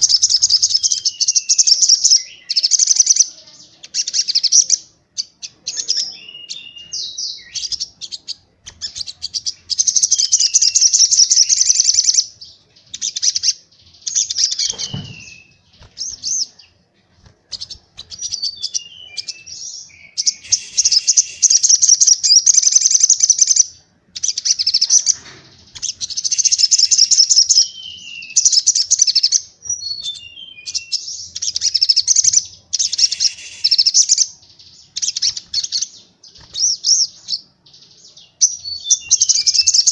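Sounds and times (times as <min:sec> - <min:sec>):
bird song high trilled bursts: 0:18.2 - 0:23.6, 0:25.8 - 0:29.2, 0:32.8 - 0:35.7.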